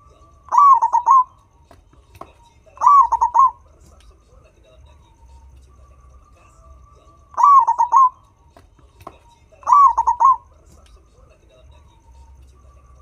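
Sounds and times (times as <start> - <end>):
turtledove cooing: 0.3 - 1.4, 2.7 - 3.6, 6.4 - 8.2, 9.6 - 10.5.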